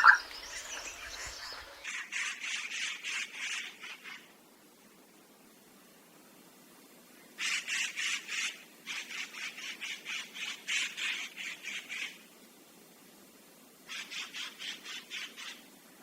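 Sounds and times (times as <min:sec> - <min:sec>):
bird harsh rasping chatter: 0:00.0 - 0:01.6.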